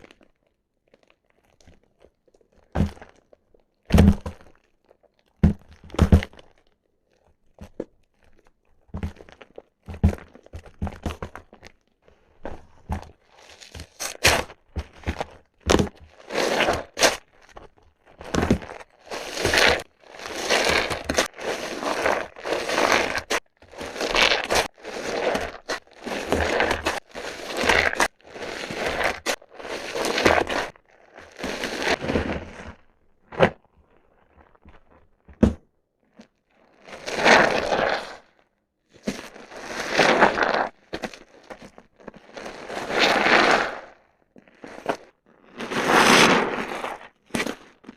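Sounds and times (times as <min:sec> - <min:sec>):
wet soap crunching squeezes: 0:00.0 - 0:35.3.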